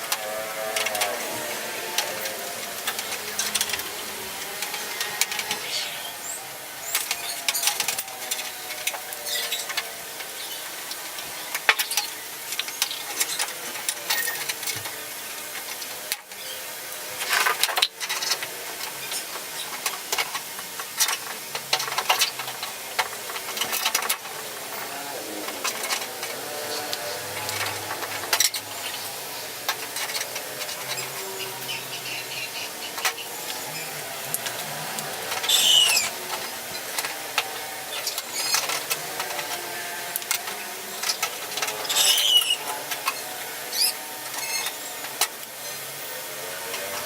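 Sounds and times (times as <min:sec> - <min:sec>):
steady hiss: 0:00.0 - 0:47.0
tools and parts clicking and knocking: 0:17.2 - 0:31.7.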